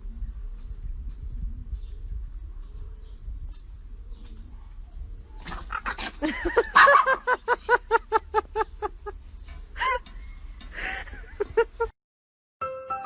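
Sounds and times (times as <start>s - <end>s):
animal yelping: 5.4s - 7.2s.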